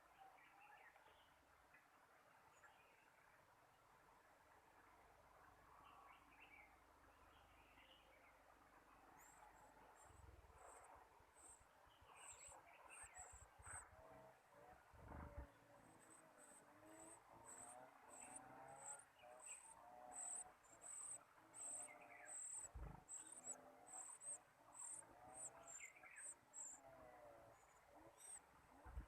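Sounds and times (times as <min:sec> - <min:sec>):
faint wavering bird calls: 0:05.0 - 0:29.0
nestling birds high chirps: 0:16.1 - 0:26.8.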